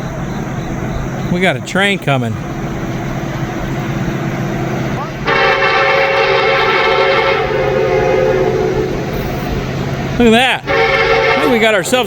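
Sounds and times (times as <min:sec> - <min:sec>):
steady low rumble: 0:00.0 - 0:12.0
locomotive air horn: 0:05.0 - 0:09.6, 0:10.6 - 0:12.0.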